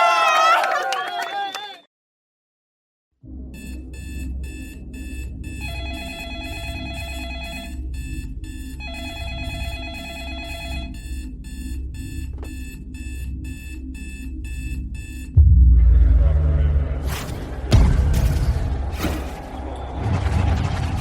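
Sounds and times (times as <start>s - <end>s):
low bass: 12.2s - 21.0s.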